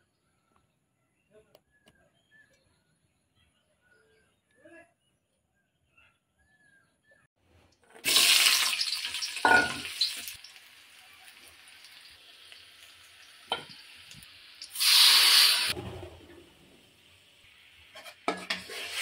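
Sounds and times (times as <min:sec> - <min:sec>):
food sizzling in hot oil: 0:07.9 - 0:15.8, 0:16.9 - 0:19.0.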